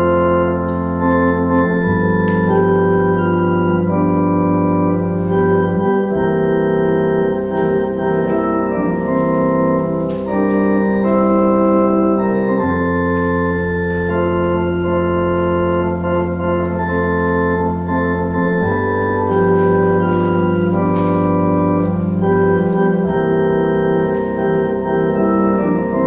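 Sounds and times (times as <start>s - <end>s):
organ playing sustained chords: 0.0s - 26.0s.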